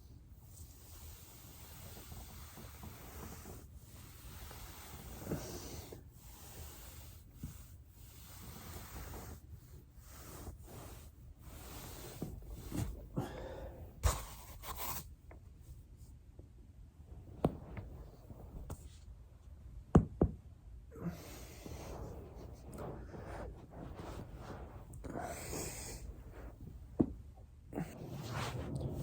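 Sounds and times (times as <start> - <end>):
body rustling on foam roller: 0.7 - 15.0, 17.0 - 19.2, 21.0 - 29.0
heavy breathing: 11.9 - 14.0, 20.9 - 27.0, 27.7 - 29.0.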